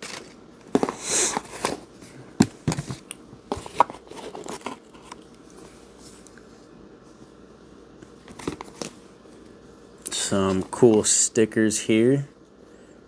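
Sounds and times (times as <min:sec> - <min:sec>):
paper packaging rustling: 0:00.0 - 0:06.2, 0:08.2 - 0:09.0, 0:10.1 - 0:11.2.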